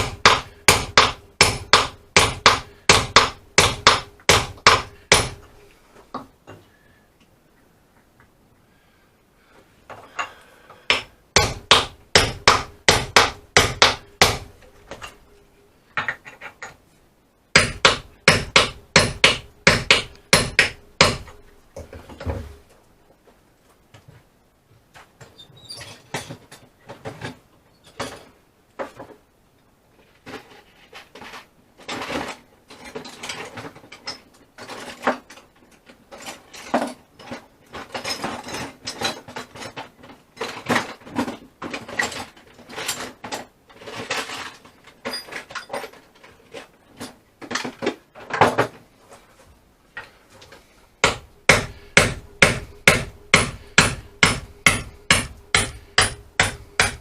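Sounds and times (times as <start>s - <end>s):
hammer knocking on wood: 0.0s - 5.4s, 10.9s - 14.5s, 17.6s - 21.4s, 51.0s - 57.0s
ringing hammer strikes: 51.0s - 57.0s.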